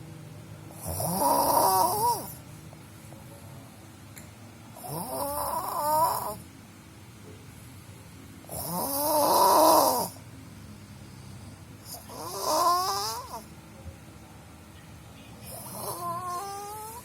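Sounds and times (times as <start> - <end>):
person snoring: 0.7 - 2.4, 4.8 - 6.4, 8.5 - 10.2, 11.1 - 13.5, 15.5 - 17.0.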